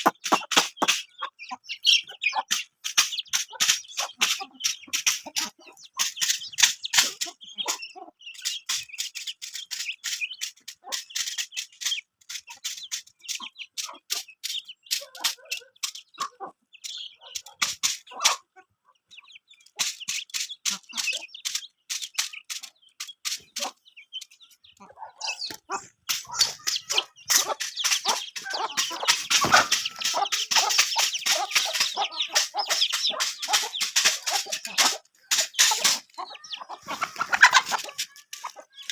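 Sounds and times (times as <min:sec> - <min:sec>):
chickens chirping and clucking: 0:00.0 - 0:38.9
chickens pecking clicks: 0:00.0 - 0:38.9.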